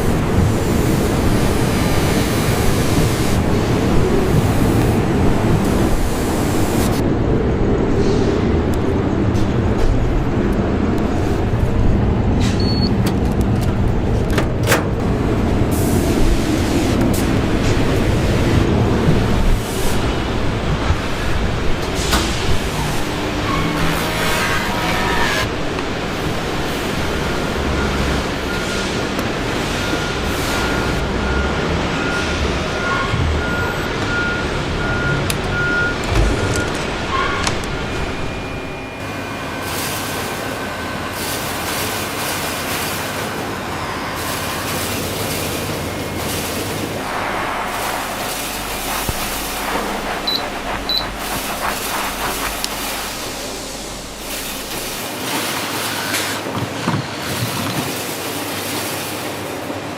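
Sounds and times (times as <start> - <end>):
low mechanical rumble: 0.0 - 23.8, 46.7 - 55.8
engine rumble: 25.5 - 39.4, 45.8 - 55.6
reversing alarm beeping: 27.1 - 42.0, 48.1 - 56.4.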